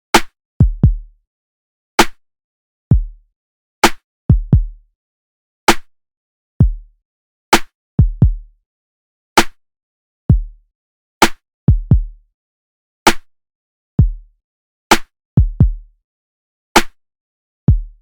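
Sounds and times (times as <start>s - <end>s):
drum machine snare or clap: 0.2s - 1.0s, 2.0s - 2.2s, 3.8s - 4.7s, 5.7s - 5.9s, 7.5s - 8.4s, 9.4s - 9.6s, 11.2s - 12.1s, 13.1s - 13.3s, 14.9s - 15.8s, 16.8s - 17.0s
drum machine kick thumps: 0.2s - 1.1s, 2.9s - 3.2s, 3.8s - 4.8s, 6.6s - 6.8s, 7.6s - 8.4s, 10.3s - 10.5s, 11.2s - 12.2s, 14.0s - 14.2s, 14.9s - 15.8s, 17.7s - 18.0s.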